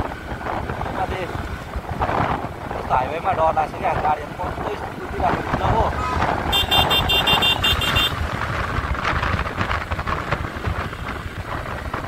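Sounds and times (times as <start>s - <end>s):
wind on microphone: 0.0s - 12.0s
motorcycle engine: 4.3s - 12.0s
vehicle horn short high beeps: 6.0s - 8.2s.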